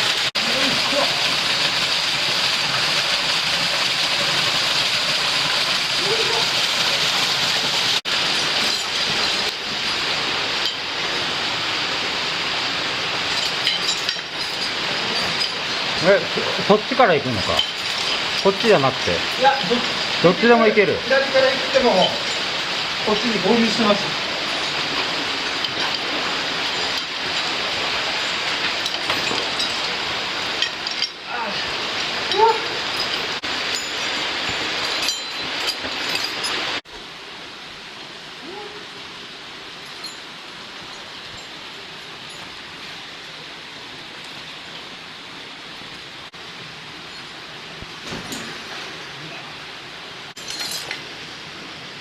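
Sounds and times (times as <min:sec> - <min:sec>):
rushing stream water: 0:00.0 - 0:52.0
metallic clinks of climbing gear: 0:13.3 - 0:16.0, 0:32.2 - 0:36.7, 0:50.4 - 0:51.0.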